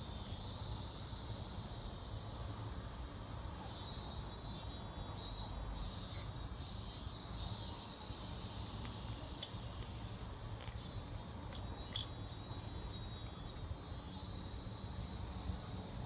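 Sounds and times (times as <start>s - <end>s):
insects chirring: 0.0s - 16.0s.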